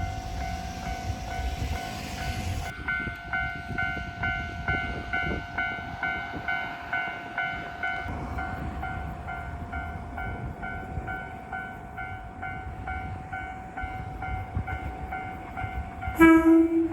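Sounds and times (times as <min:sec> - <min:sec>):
level-crossing warning bell: 0:00.0 - 0:16.9
train rumble: 0:00.0 - 0:16.9.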